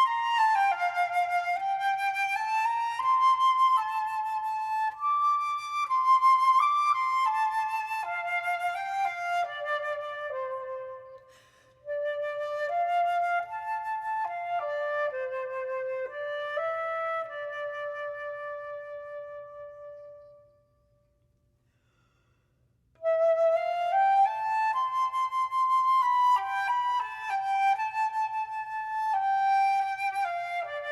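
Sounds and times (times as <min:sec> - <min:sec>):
solo flute melody: 0:00.0 - 0:21.0, 0:23.0 - 0:30.9
flute player breath: 0:11.1 - 0:11.9, 0:21.6 - 0:22.8.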